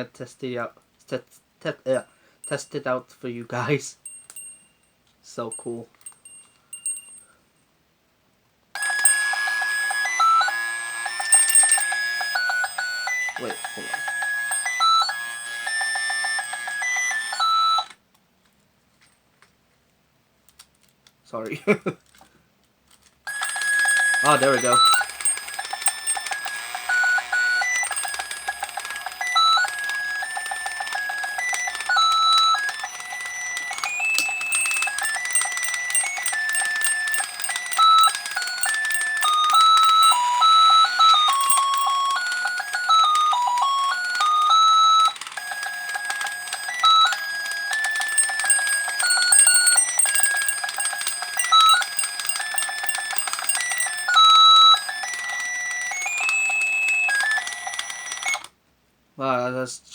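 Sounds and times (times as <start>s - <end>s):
toy bell ringing fast: 4.0s - 4.8s, 5.5s - 7.3s, 8.8s - 17.9s, 23.3s - 58.5s
loud gear ticking: 23.3s - 44.4s, 45.2s - 55.0s.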